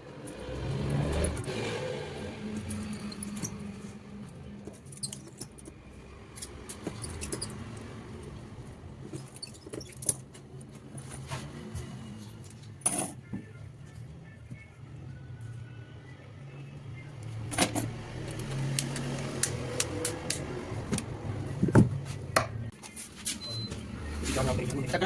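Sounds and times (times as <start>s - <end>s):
small tools clicking and tapping: 2.5s - 8.0s, 17.5s - 21.8s.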